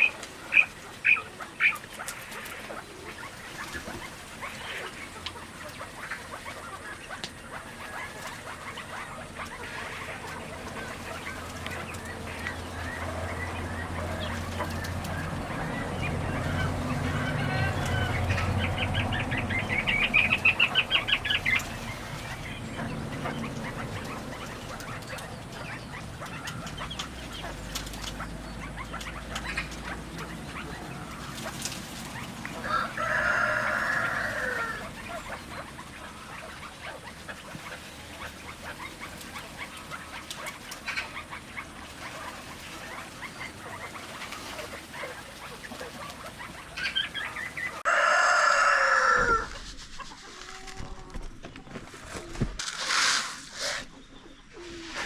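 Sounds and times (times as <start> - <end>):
chickens clucking: 0.0 - 55.0
rooster crowing: 15.7 - 19.2, 32.6 - 35.0, 47.8 - 49.6.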